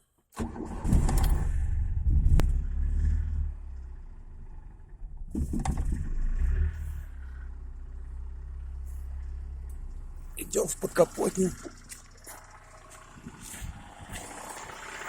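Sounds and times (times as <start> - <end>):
small petrol engine idling: 3.6 - 15.0.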